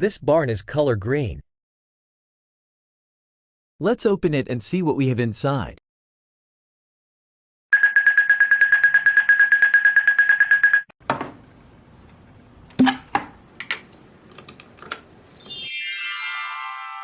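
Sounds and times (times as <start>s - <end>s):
toy barn clicks and knocks: 12.8s - 15.1s
descending chime glissando: 15.2s - 17.0s.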